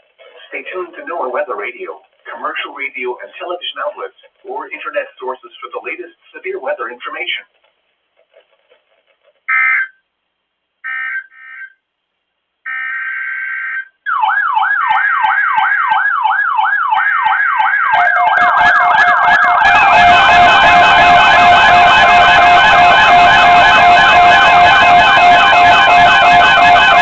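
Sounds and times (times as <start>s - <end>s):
electronic siren yelping: 9.5s - 10.0s, 10.8s - 11.8s, 12.6s - 27.0s.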